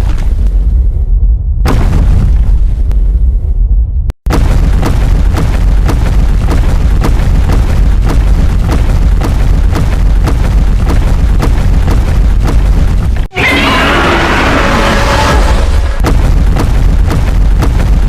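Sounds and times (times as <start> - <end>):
distorted low rumble: 0.0 - 18.0
sharp crackles: 4.3 - 18.0.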